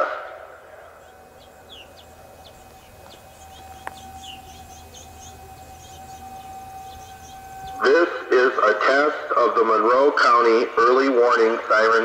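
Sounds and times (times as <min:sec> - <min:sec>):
birds chirping: 0:00.0 - 0:09.5
faint steady tone: 0:00.0 - 0:10.0.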